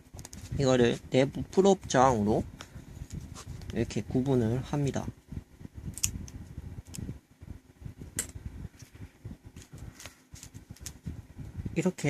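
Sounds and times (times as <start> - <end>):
small sharp connector clicks: 5.9 - 7.1.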